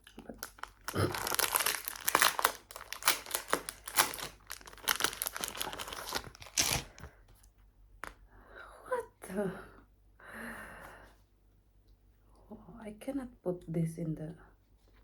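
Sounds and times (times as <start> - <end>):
packaging crinkling and rustling: 0.0 - 7.2.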